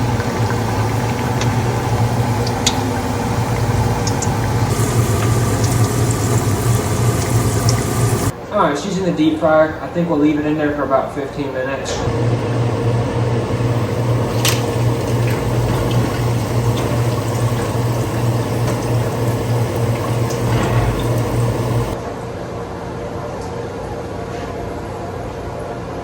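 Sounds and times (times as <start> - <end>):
steady low hum: 0.0 - 8.3, 12.0 - 22.0
oil bubbling and sizzling in fryer: 0.0 - 8.4, 12.1 - 22.0.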